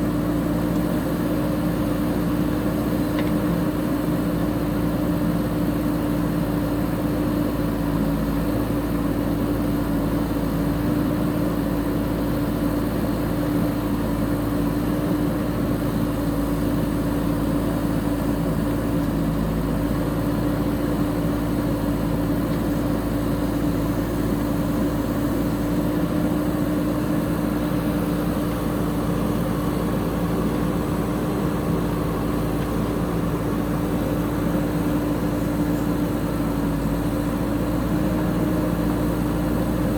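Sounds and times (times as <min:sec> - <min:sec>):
diesel engine humming: 0:00.0 - 0:39.9.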